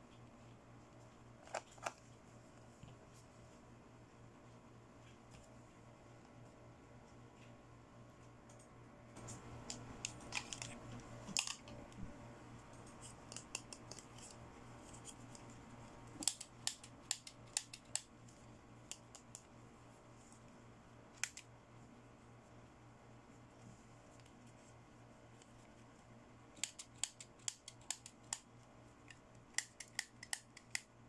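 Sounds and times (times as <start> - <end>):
faint low hum: 0.0 - 31.0
plastic clicks and snips: 29.1 - 30.9.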